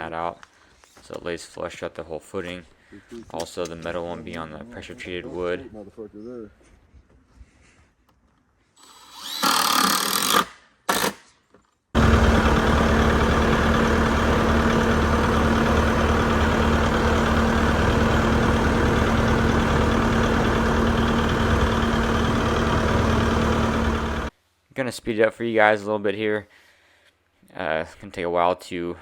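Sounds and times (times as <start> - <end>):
power tool humming: 12.0 - 24.3.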